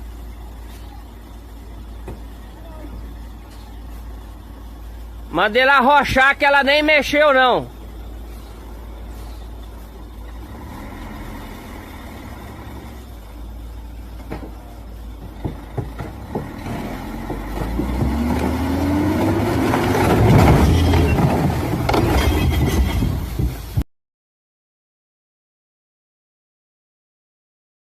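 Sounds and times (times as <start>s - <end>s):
diesel truck engine revving: 0.0s - 23.8s
sharp knocks and cracks: 15.2s - 23.6s.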